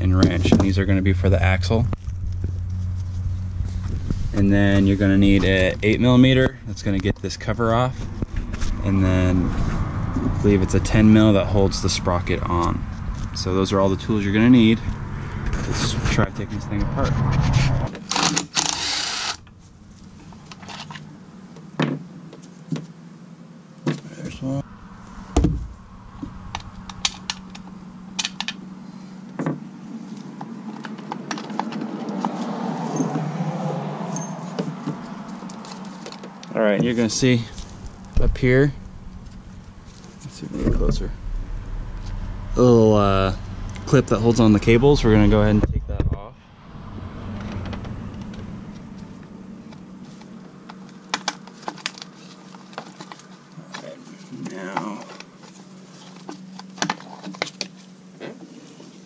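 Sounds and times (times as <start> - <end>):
low rumble: 0.0 - 17.9, 24.3 - 29.1, 36.9 - 50.7
faint low hum: 22.5 - 31.0, 35.1 - 51.1.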